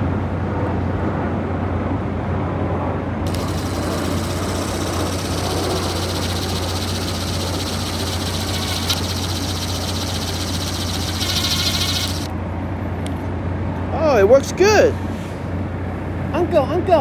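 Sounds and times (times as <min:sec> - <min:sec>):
electric drill running: 0:03.2 - 0:12.3.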